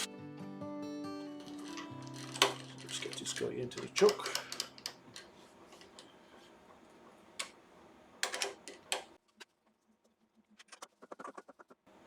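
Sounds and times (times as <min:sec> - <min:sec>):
clicks and knocks on lathe chuck: 0:01.4 - 0:06.1.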